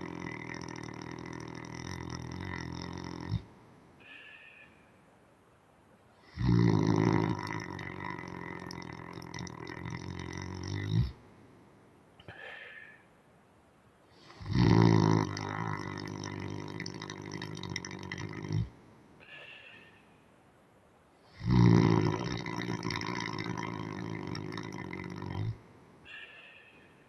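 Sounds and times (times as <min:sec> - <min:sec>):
man snoring loudly: 0:00.0 - 0:03.5, 0:06.3 - 0:11.2, 0:14.2 - 0:18.7, 0:21.3 - 0:25.6
soft breath: 0:03.4 - 0:05.1, 0:12.2 - 0:13.1, 0:18.6 - 0:20.3, 0:25.4 - 0:27.0.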